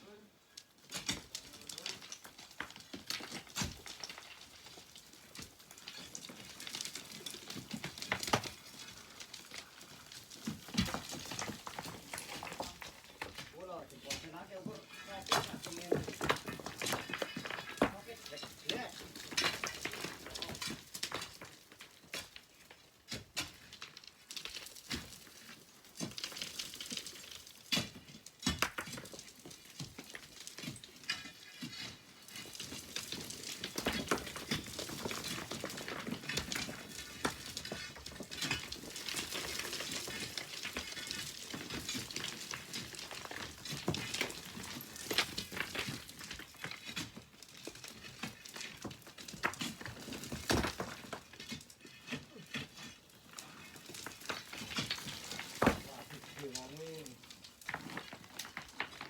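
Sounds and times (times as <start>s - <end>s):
stones clicking and clattering: 0.6s - 59.0s
trickling sand hiss: 54.8s - 57.8s.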